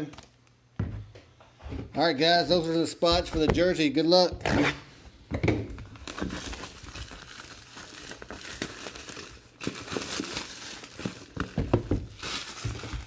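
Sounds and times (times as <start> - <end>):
plastic packaging crinkling and tearing: 5.8 - 13.0.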